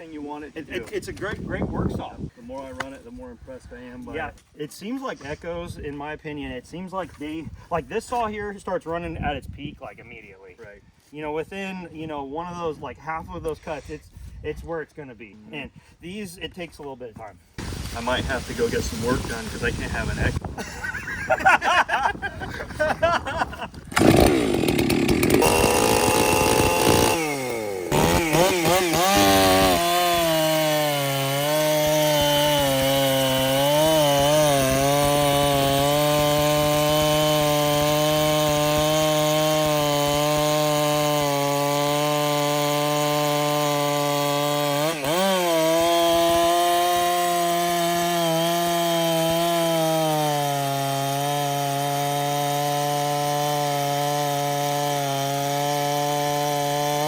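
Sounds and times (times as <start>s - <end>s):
chainsaw running at full throttle: 17.6s - 20.4s, 23.8s - 57.0s.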